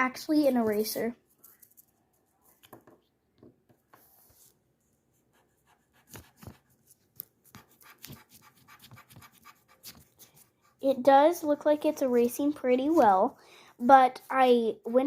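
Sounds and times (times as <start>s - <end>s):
eraser scratching on paper: 5.3s - 10.8s.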